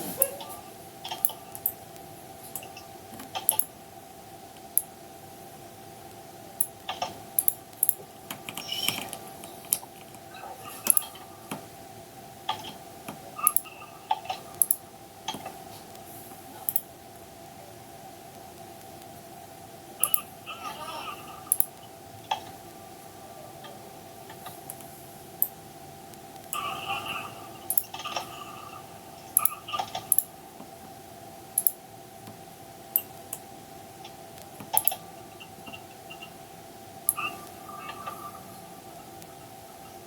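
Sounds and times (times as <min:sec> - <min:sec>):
faint steady hum: 0:00.0 - 0:40.0
computer keyboard and mouse clicks: 0:01.1 - 0:01.8, 0:02.5 - 0:03.7, 0:06.6 - 0:10.2, 0:10.8 - 0:11.7, 0:12.5 - 0:13.7, 0:14.5 - 0:16.0, 0:21.5 - 0:21.8, 0:27.7 - 0:28.1, 0:29.3 - 0:30.3, 0:31.6 - 0:32.4, 0:33.0 - 0:35.0.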